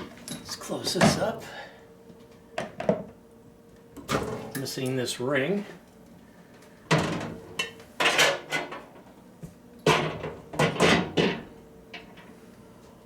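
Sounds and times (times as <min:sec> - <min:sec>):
microwave door shutting: 0:04.0 - 0:04.6
microwave parts clunking: 0:09.8 - 0:12.3.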